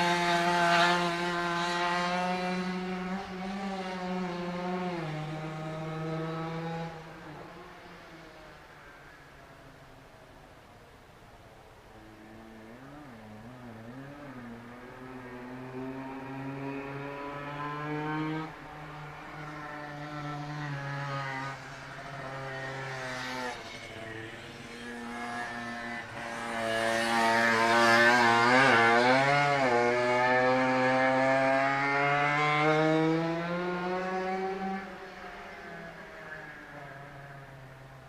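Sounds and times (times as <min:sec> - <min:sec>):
two-stroke motorcycle revving: 0:24.7 - 0:35.0.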